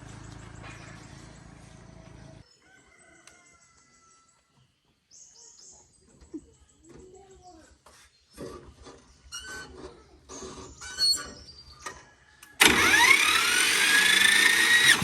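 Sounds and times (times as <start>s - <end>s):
engine chugging: 0.0s - 2.4s, 12.6s - 15.0s
rooster crowing: 2.6s - 4.4s.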